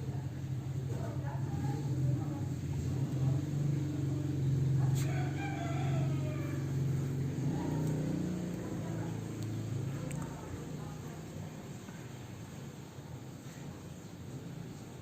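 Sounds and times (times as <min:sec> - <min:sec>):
low motor hum: 0:00.0 - 0:12.6
rooster crowing: 0:04.8 - 0:07.2.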